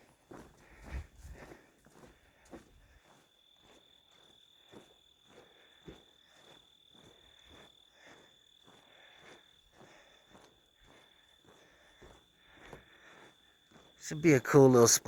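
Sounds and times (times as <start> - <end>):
faint footsteps on a trail: 0.0 - 14.9
cricket trill: 3.0 - 15.0.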